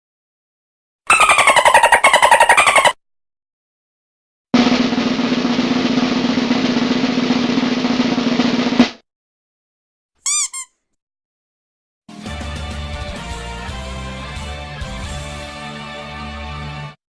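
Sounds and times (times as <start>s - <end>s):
squeaky cartoon sound effect: 1.1s - 3.0s, 10.2s - 10.8s
snare drum roll: 4.6s - 9.0s.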